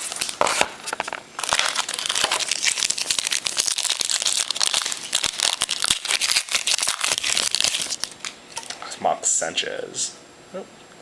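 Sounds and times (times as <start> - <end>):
wrapper crinkling and tearing: 0.0 - 8.8.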